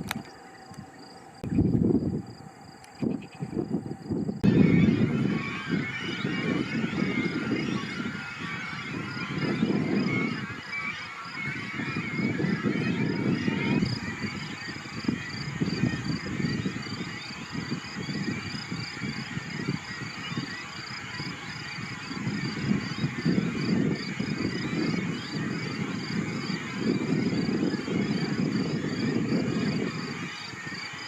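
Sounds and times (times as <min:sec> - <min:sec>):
faint bird calls: 0:00.0 - 0:31.0
wind rumbling on microphone: 0:00.0 - 0:31.0
high chirping: 0:04.4 - 0:25.8.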